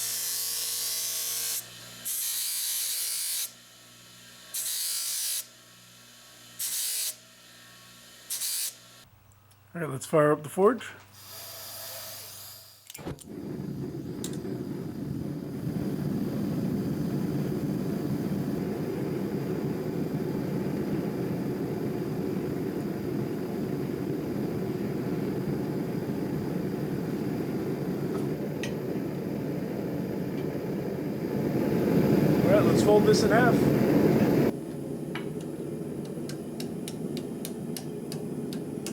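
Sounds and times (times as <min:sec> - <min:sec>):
forge burner rushing: 0:13.0 - 0:38.9.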